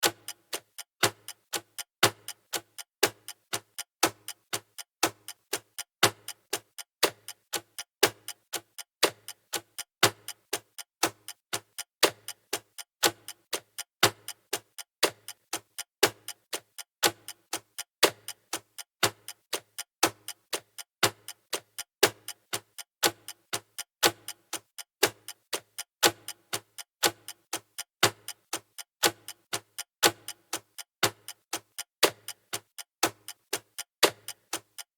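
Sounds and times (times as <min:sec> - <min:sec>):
clock ticking: 0:00.0 - 0:34.9.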